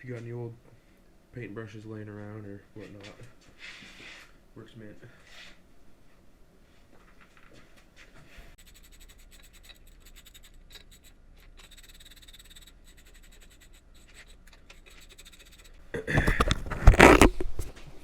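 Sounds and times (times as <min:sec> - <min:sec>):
metallic ticking and scraping: 0:08.6 - 0:17.3.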